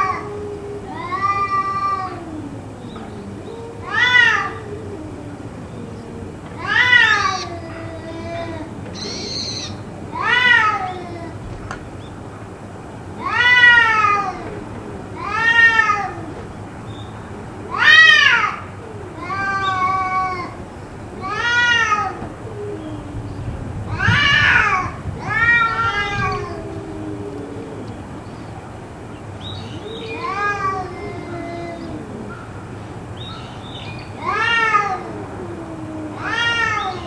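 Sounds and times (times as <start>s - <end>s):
cat yowling: 0.0s - 11.6s, 13.2s - 16.5s, 17.4s - 28.2s, 29.8s - 33.5s, 34.1s - 37.0s.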